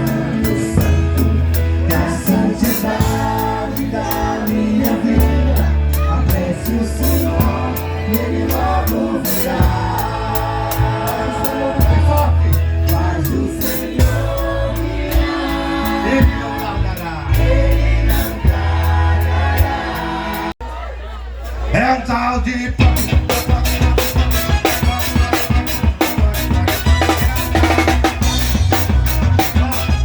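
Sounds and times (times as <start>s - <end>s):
live band playing: 0.0s - 20.6s, 22.4s - 30.0s
cymbals keeping a beat: 22.8s - 30.0s.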